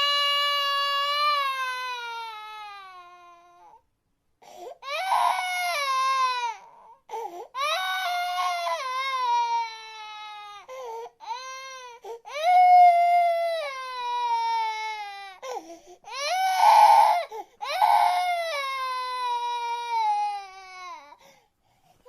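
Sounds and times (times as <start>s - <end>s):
young child crying and wailing: 0.0s - 3.8s, 4.6s - 21.2s
child's sobbing breaths: 4.4s - 4.8s, 6.8s - 7.6s, 10.6s - 11.2s, 15.4s - 16.1s, 21.1s - 22.0s.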